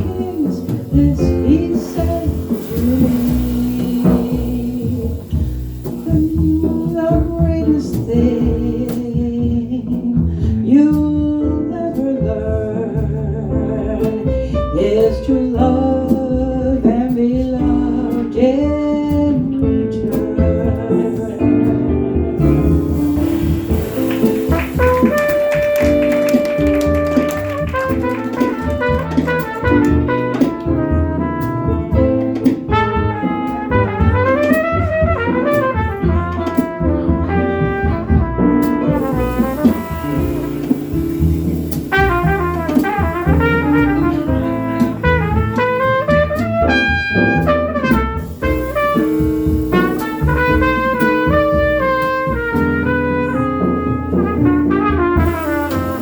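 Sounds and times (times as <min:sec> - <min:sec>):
trumpet melody: 0:00.0 - 0:08.4, 0:22.4 - 0:56.0
jazz combo playing: 0:00.0 - 0:56.0.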